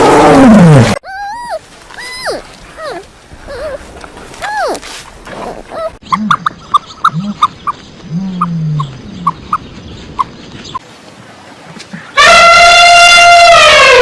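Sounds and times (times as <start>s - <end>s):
high animal peeps: 4.4s - 10.8s.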